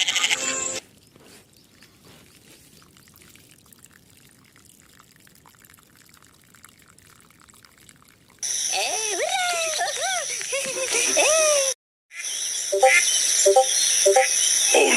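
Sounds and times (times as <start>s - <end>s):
water trickling and pouring: 0.8s - 9.7s
water dripping: 1.6s - 8.5s.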